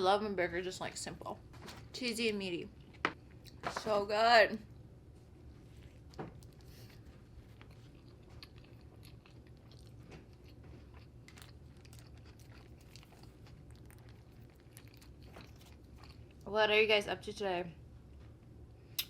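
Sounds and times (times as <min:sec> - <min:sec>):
person chewing food: 0:05.3 - 0:16.4.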